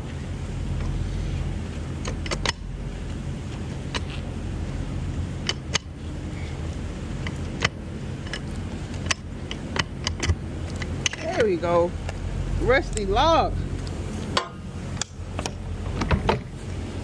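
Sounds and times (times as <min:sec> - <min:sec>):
truck engine rumbling: 0:00.0 - 0:17.0
sharp clicks and knocks: 0:02.0 - 0:04.3, 0:05.4 - 0:06.0, 0:06.7 - 0:11.4, 0:13.8 - 0:16.5.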